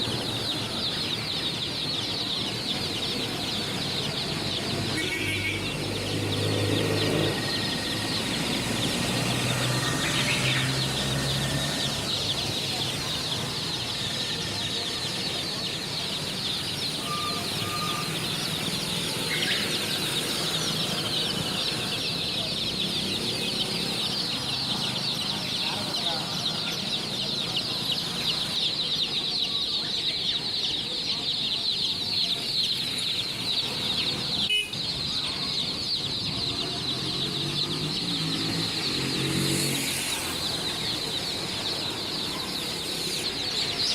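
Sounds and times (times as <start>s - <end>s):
chicks peeping: 0.0s - 43.9s.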